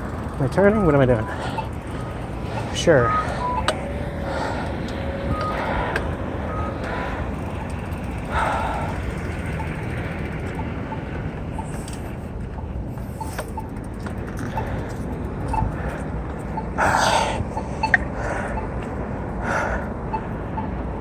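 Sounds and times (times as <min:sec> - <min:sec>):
bike tyre rumble: 0:00.0 - 0:04.8.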